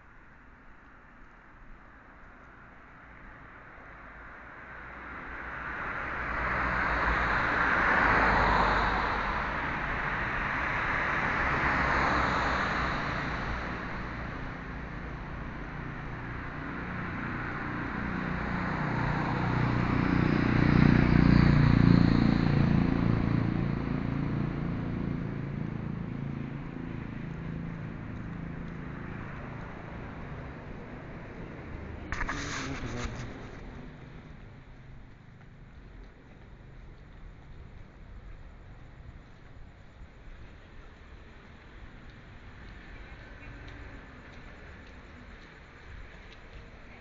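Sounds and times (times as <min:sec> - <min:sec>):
vehicles passing with tyre swish: 0:00.0 - 0:47.0
vehicle engine rumble: 0:12.5 - 0:47.0.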